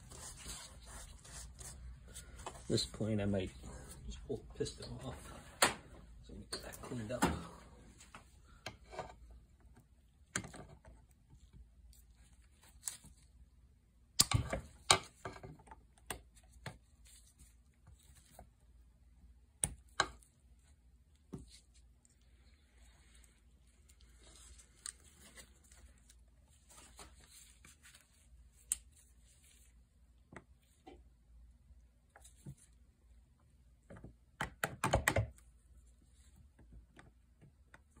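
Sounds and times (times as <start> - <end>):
faint scraping and rustling: 21.4 - 30.0.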